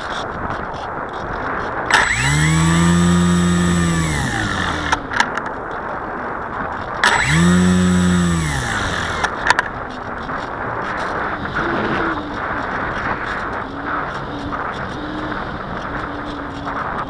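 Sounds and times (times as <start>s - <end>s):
electric motor and propeller whine: 1.9s - 5.1s, 7.0s - 9.5s
sharp clicks: 1.9s - 5.2s, 7.0s - 9.4s.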